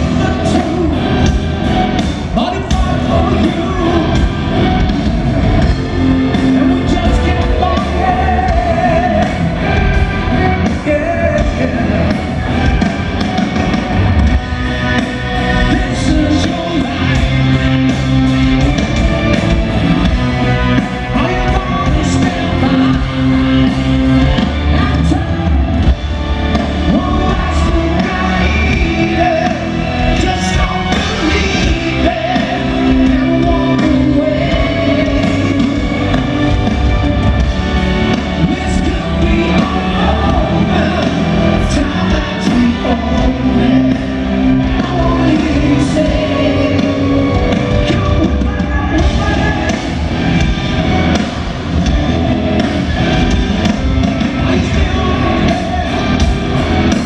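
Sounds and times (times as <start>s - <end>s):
rock band playing live: 0.0s - 57.0s
person singing: 6.0s - 12.4s, 15.4s - 17.6s, 20.5s - 25.9s, 26.5s - 36.9s, 37.9s - 50.5s, 52.1s - 57.0s.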